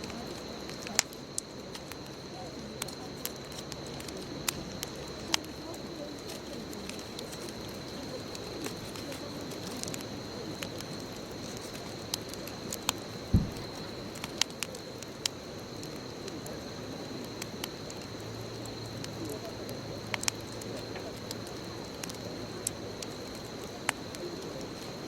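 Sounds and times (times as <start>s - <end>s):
bonfire popping and crackling: 0.0s - 25.0s
low thump: 13.3s - 13.8s.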